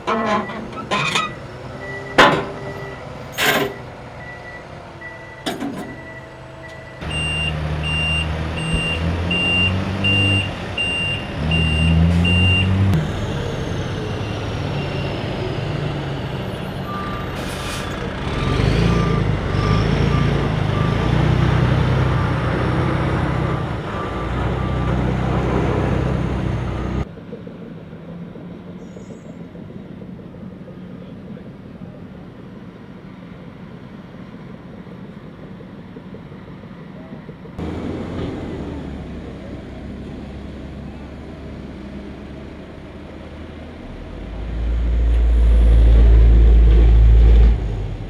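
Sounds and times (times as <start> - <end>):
heavy diesel machinery working: 0.0 - 48.0
outdoor background noise: 0.0 - 48.0
backup alarms beeping: 3.7 - 12.8.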